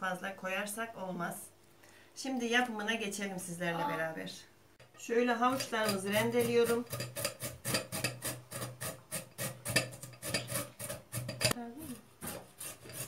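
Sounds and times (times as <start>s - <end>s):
carrots grated on metal grater: 5.4s - 11.6s, 12.2s - 13.0s.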